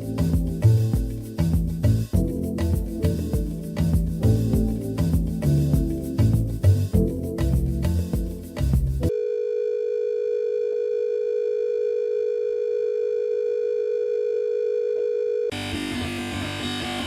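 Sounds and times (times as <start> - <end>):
elevator background music: 0.0 - 9.1.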